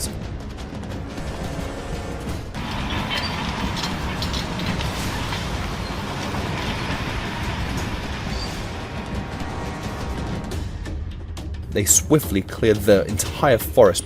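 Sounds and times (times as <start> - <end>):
knocks and metallic rattling: 1.1 - 10.6
diesel bulldozer engine rumble: 2.4 - 10.2
heavy chain dragging through brush: 2.6 - 8.7.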